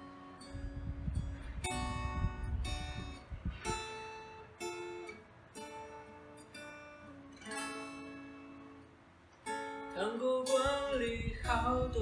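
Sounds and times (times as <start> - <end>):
acoustic guitar chords ringing: 0.0 - 12.0
wind buffeting microphone: 0.4 - 4.2, 10.6 - 12.0.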